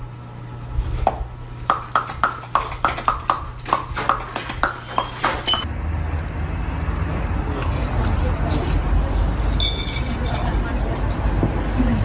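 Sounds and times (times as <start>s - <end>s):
sharp ringing knocks: 1.7s - 5.6s.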